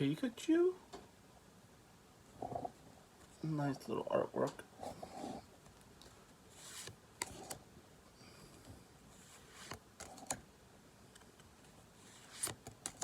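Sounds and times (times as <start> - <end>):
trading cards clicking and rustling: 12.2 - 13.0.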